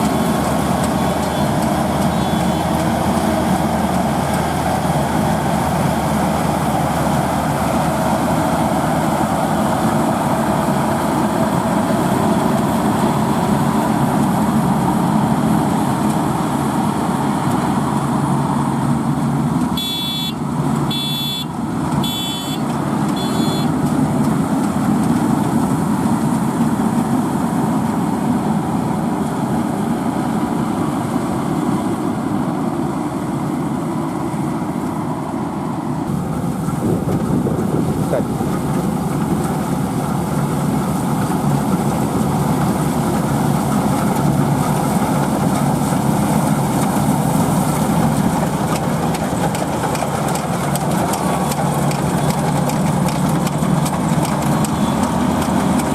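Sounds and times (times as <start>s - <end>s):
diesel engine running: 0.0s - 55.9s
short high-pitched beeps: 19.8s - 22.6s, 23.2s - 23.7s.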